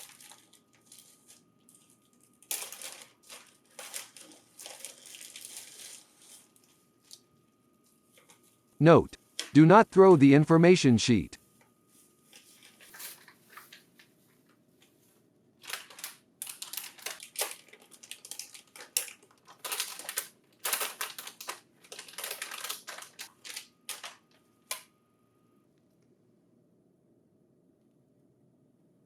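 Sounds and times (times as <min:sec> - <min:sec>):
packaging crinkling and rustling: 0:00.0 - 0:08.6, 0:12.2 - 0:15.0, 0:15.6 - 0:24.8.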